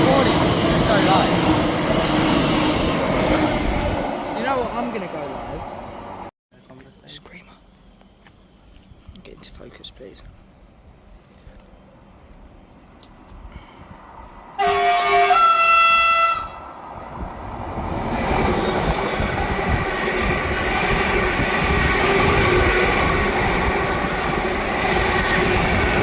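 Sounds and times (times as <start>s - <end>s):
train rumble and whine: 0.0s - 26.0s
train horn two notes: 14.6s - 16.6s.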